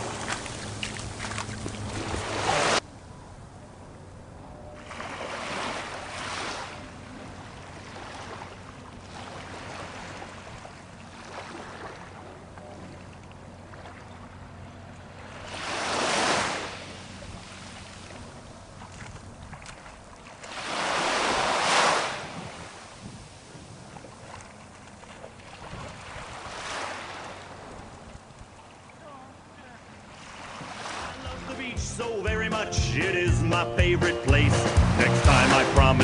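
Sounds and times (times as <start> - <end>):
waves crashing: 0.0 - 2.8, 4.8 - 12.2, 15.1 - 27.9, 29.7 - 33.4, 34.2 - 36.0
waves washing on beach: 0.0 - 2.8, 4.8 - 12.3, 15.2 - 28.1, 29.0 - 31.7.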